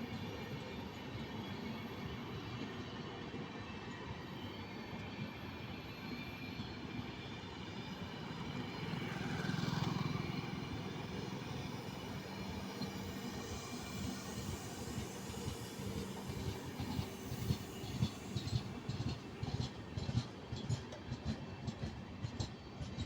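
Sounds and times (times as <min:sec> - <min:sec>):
train rumbling: 0:08.2 - 0:23.0.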